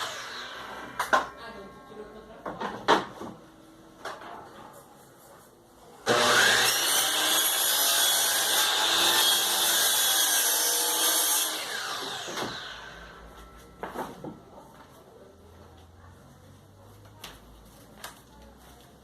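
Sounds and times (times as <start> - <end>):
electric power tool cutting wood: 0.0 - 1.3, 6.1 - 13.2.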